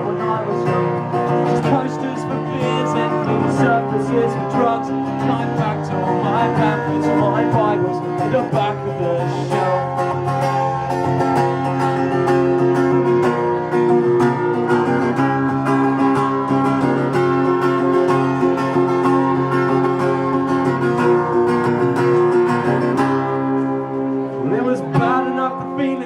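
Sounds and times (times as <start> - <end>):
plucked strings: 0.0 - 26.0
strummed guitar: 0.0 - 26.0.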